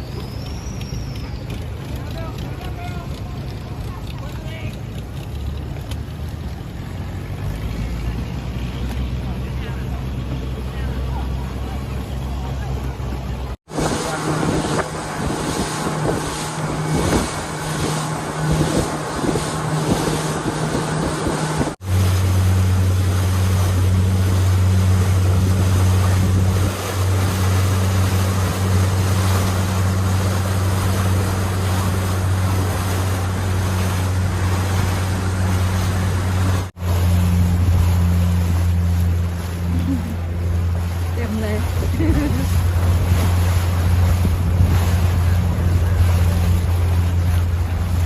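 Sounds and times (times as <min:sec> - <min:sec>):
boat engine running: 0:00.0 - 0:48.0
low-pitched engine running: 0:00.0 - 0:48.0
water noise: 0:00.0 - 0:48.0
wind: 0:00.0 - 0:48.0.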